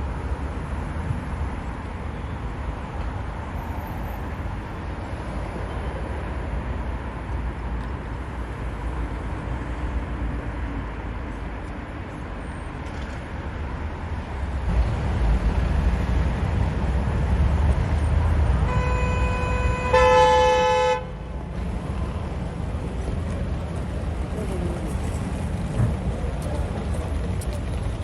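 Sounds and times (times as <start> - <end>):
road traffic rumble: 0.0 - 28.0.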